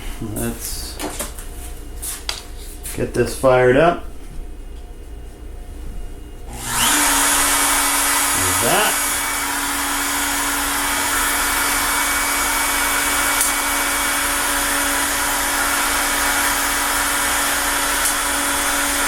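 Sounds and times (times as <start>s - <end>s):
high-speed electric motor whining: 6.5s - 19.0s.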